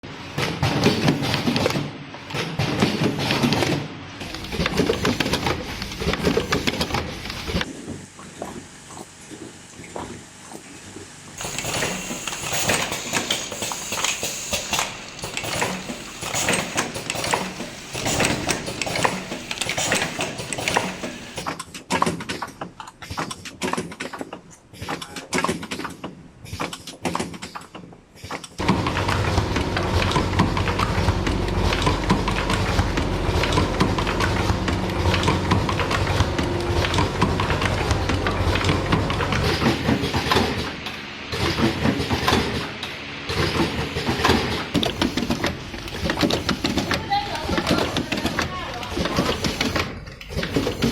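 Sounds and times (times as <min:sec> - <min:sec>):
machine clicks and knocks: 0:11.4 - 0:50.9
low machine hum: 0:28.6 - 0:44.9.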